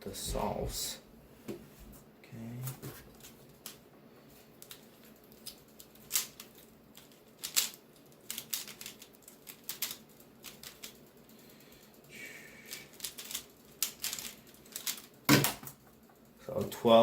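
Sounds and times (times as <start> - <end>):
puzzle cube plastic clicks: 4.6 - 11.0, 12.7 - 16.0.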